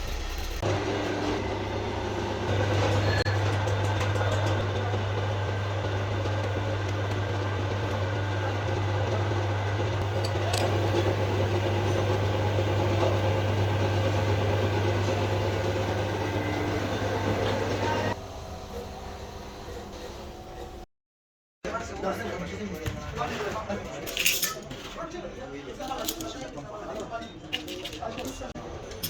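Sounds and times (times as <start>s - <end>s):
machine humming: 0.0s - 20.8s.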